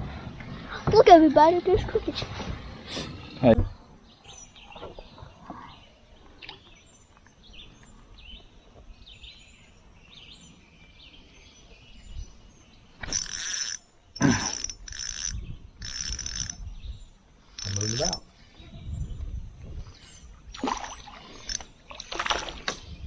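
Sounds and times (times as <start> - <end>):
small birds chirping: 3.0 - 21.7
loud rasping bursts: 13.0 - 16.6, 17.6 - 18.2.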